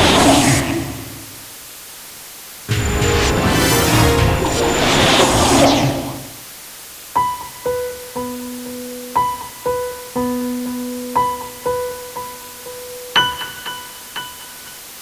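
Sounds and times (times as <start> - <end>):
slow keyboard melody: 2.7 - 5.3.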